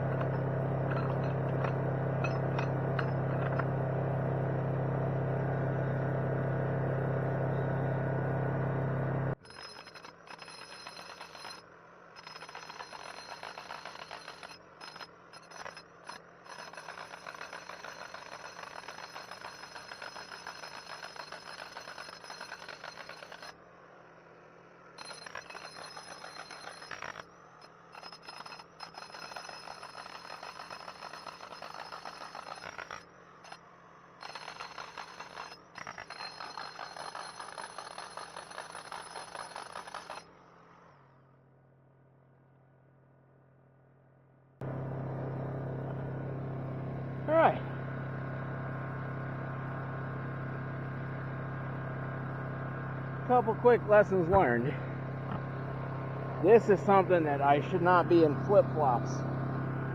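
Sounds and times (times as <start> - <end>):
jackhammer hammering rock: 0.0 - 4.6, 9.3 - 23.6, 25.0 - 40.4, 53.0 - 59.9
portable generator running: 0.0 - 9.4, 44.6 - 59.9.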